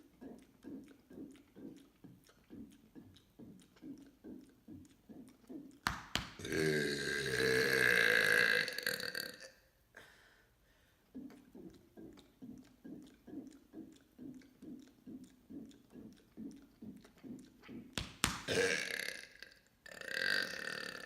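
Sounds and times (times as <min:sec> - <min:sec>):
long loud burp: 0:06.4 - 0:09.7, 0:18.5 - 0:21.0.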